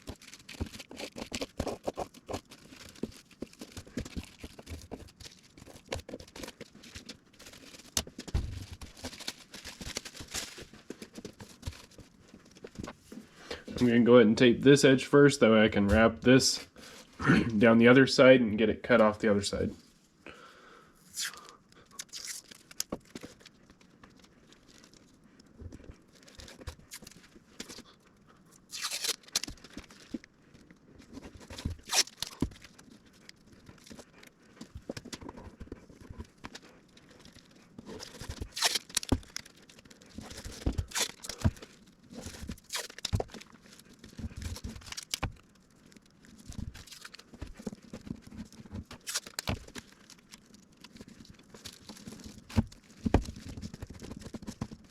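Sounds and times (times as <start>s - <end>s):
plastic sheet crinkling: 0.0s - 13.0s, 21.3s - 27.9s, 28.7s - 54.9s
masking tape tearing: 21.1s - 22.9s, 28.7s - 29.7s, 31.7s - 32.5s, 38.0s - 39.5s, 40.2s - 41.5s, 42.3s - 43.4s, 48.9s - 49.8s.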